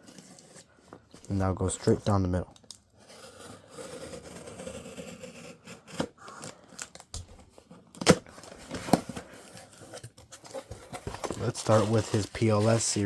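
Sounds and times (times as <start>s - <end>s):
cardboard and packing rustling: 5.8s - 13.0s.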